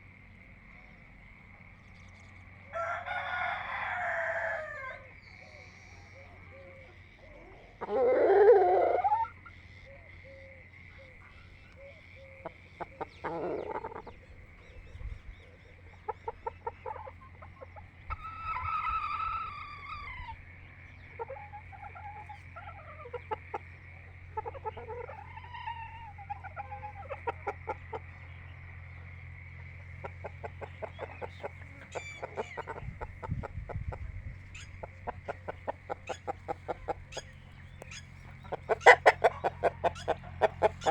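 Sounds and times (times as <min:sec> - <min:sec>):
rooster crowing: 0:02.6 - 0:05.3, 0:06.6 - 0:09.4, 0:18.1 - 0:20.4, 0:38.6 - 0:40.9
chickens clucking: 0:06.0 - 0:09.9, 0:10.9 - 0:40.9.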